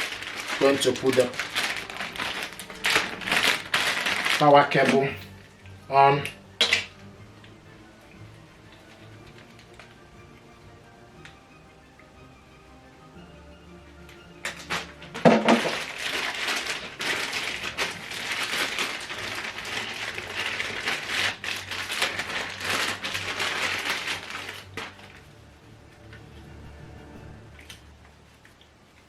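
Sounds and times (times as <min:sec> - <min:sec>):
plastic packaging crinkling: 0:00.0 - 0:07.5, 0:08.5 - 0:10.1, 0:14.4 - 0:25.3.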